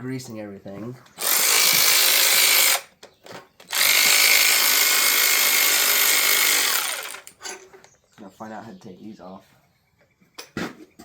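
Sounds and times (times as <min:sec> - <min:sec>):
power tool motor whining: 0:01.2 - 0:02.9, 0:03.6 - 0:07.4.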